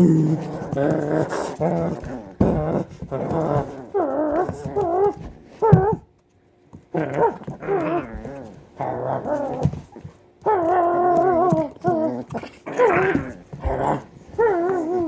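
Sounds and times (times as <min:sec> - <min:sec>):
puppy crying: 0:10.4 - 0:15.0.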